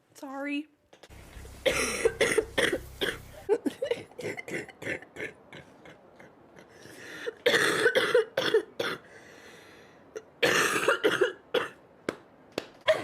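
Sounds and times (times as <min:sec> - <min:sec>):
girl coughing: 0:01.6 - 0:05.1, 0:07.4 - 0:09.0, 0:10.4 - 0:11.8
girl breathing in: 0:09.1 - 0:10.1.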